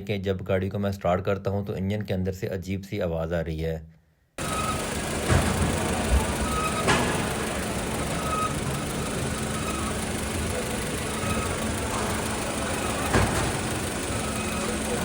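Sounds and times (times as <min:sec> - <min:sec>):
car engine idling: 0:04.4 - 0:15.0
light engine knocks: 0:04.4 - 0:15.0.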